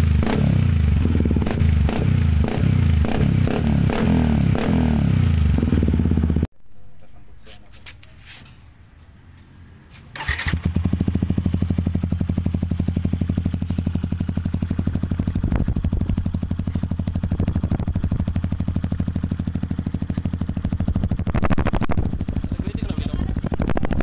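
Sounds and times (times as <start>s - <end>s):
motorcycle engine idling: 5.1s - 6.5s, 10.2s - 24.0s.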